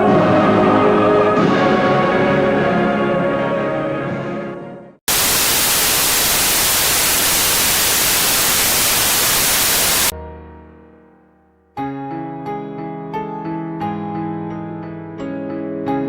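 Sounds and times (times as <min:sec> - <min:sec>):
choral music: 0:00.0 - 0:05.0
loud static hiss: 0:05.1 - 0:10.1.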